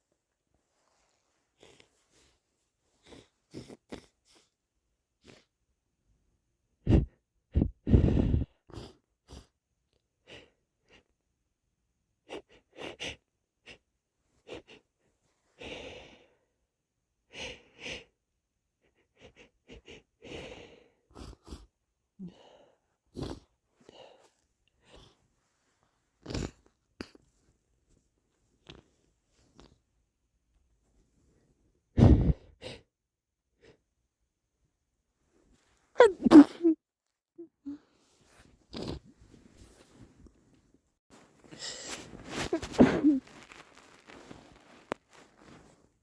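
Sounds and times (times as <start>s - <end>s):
wet sniffs and catching breaths: 3.0s - 4.5s, 26.2s - 27.3s, 38.2s - 40.2s, 41.3s - 45.8s
muffled sneezes: 36.0s - 36.8s, 41.5s - 43.4s.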